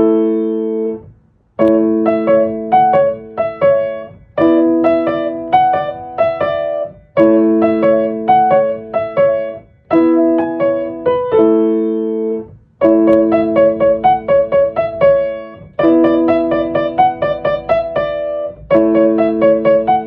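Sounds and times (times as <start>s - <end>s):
solo piano piece: 0.0s - 20.0s.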